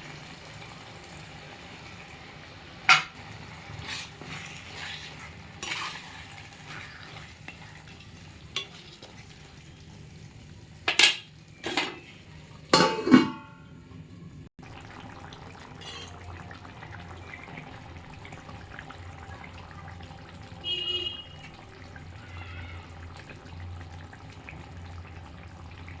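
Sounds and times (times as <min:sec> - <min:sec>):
metal pots and utensils clattering: 0:02.8 - 0:09.4, 0:10.8 - 0:14.0, 0:15.7 - 0:16.3.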